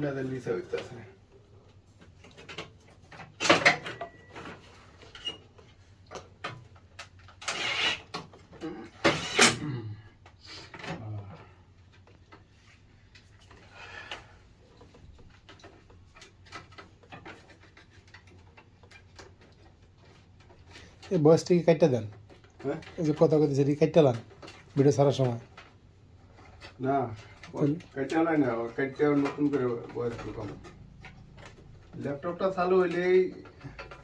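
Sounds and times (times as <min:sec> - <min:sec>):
clatter and hiss bursts: 0:09.0 - 0:09.6
tools clicking and knocking: 0:14.7 - 0:25.8, 0:26.4 - 0:34.0.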